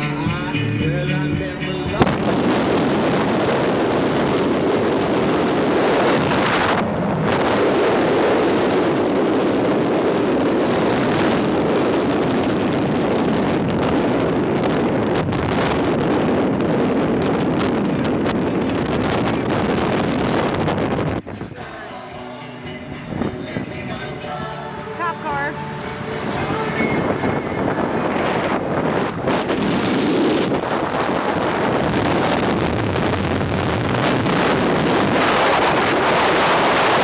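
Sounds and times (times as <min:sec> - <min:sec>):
music: 0:00.0 - 0:08.7, 0:18.2 - 0:31.7
wind rushing over microphone: 0:00.0 - 0:37.0.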